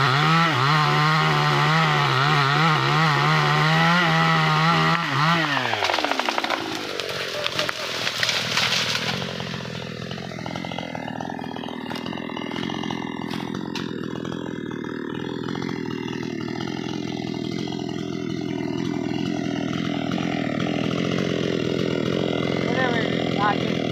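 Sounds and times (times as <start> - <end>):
chainsaw engine running: 0.0 - 23.9.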